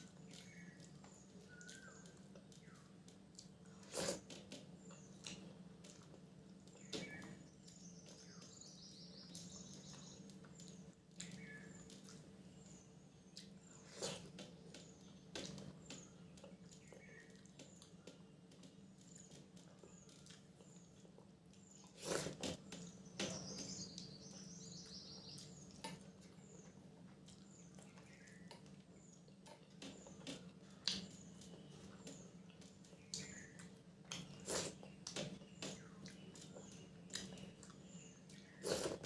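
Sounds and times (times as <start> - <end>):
low steady hum: 0.0 - 39.0
wet mouth eating sounds: 0.1 - 6.2, 19.1 - 22.8, 32.5 - 39.0.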